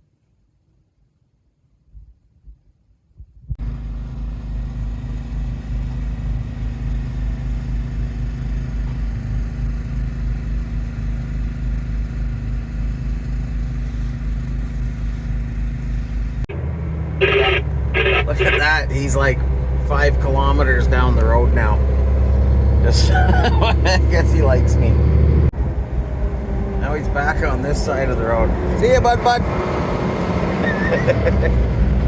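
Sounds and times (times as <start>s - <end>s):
vehicle engine and road noise: 3.6s - 32.0s.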